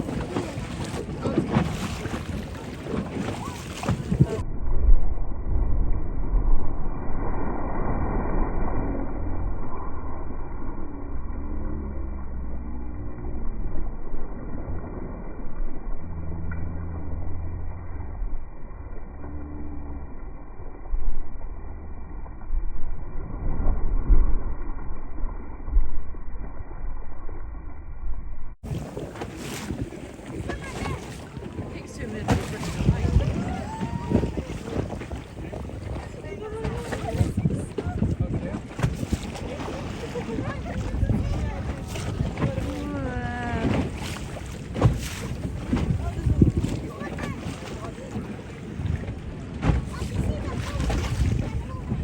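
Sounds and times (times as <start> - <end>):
wind buffeting microphone: 0.0 - 9.8, 28.6 - 52.0
boat engine rumbling: 0.0 - 52.0.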